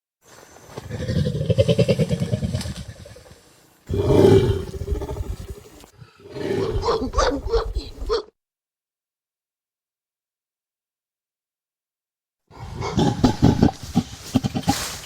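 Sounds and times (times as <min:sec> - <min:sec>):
orangutan calling: 0:03.9 - 0:08.3.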